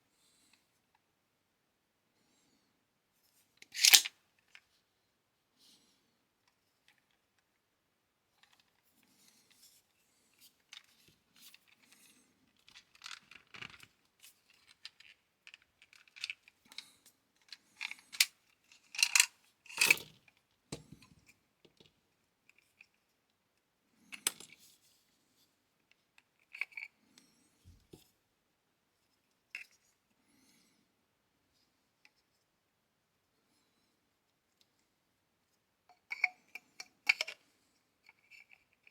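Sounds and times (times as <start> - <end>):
hand tool clicking and clacking: 3.8 - 4.1.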